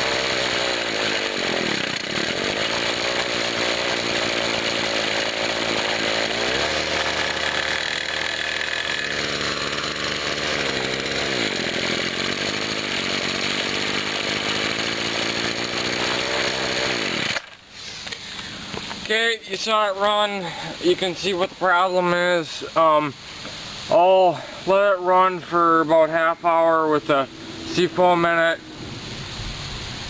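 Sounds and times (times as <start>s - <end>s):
string trimmer engine revving: 0.0s - 17.6s, 26.0s - 29.2s.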